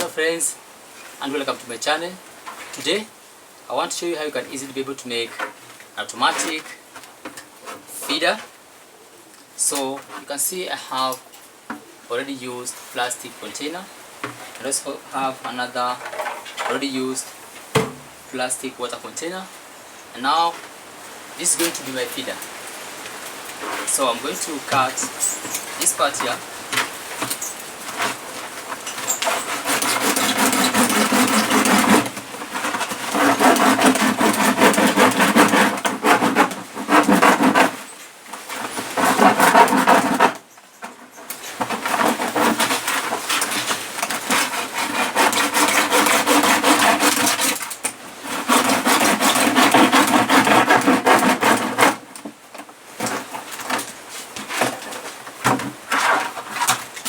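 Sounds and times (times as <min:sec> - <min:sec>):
saw cutting hard plastic: 0:23.6 - 0:40.4, 0:41.4 - 0:52.1.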